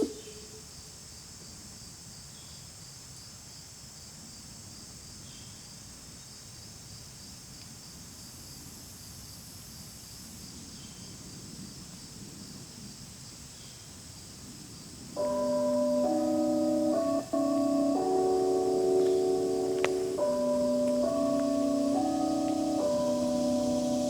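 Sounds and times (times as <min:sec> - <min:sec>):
crickets and insects trilling: 0:00.0 - 0:02.1, 0:06.6 - 0:24.0.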